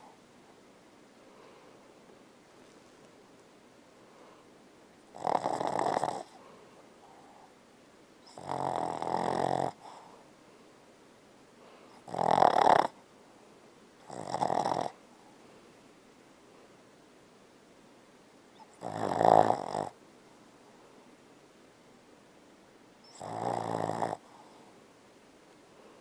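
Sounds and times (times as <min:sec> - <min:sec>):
dog snoring: 0:05.1 - 0:06.4, 0:08.2 - 0:10.1, 0:11.9 - 0:13.0, 0:14.0 - 0:15.0, 0:18.6 - 0:20.0, 0:23.0 - 0:24.6.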